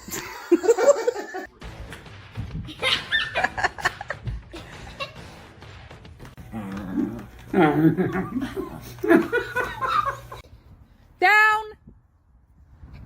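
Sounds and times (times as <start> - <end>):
person laughing: 0.0 - 1.5, 2.7 - 5.3, 7.6 - 10.4
background music: 0.5 - 10.4.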